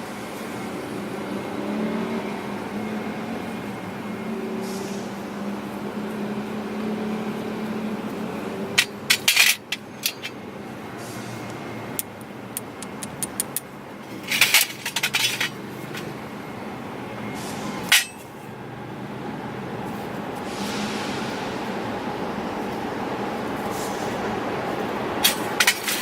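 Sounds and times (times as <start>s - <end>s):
low engine hum: 0.0s - 9.1s, 9.8s - 25.6s
metallic clicks and clinks: 12.0s - 15.6s.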